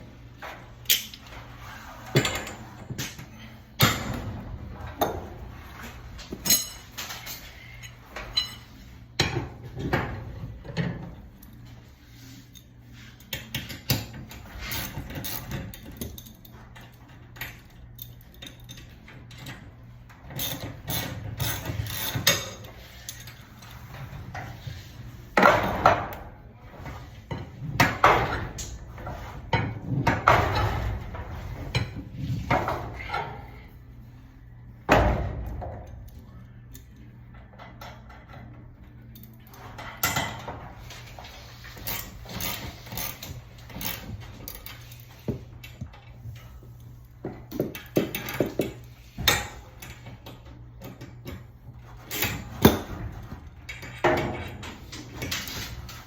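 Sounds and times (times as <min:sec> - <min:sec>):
metallic clanks of tools on spring: 0:06.4 - 0:09.4.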